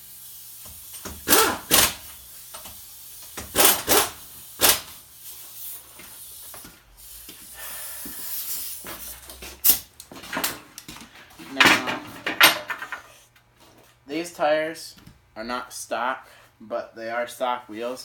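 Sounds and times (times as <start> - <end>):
tools knocking and clanking: 11.4 - 13.1.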